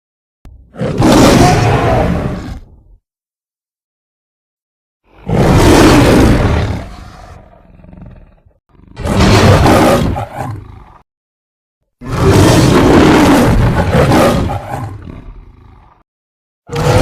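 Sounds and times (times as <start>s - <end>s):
loud rough monster roars: 0.6s - 2.8s, 5.1s - 11.0s, 12.0s - 16.0s, 16.7s - 17.0s.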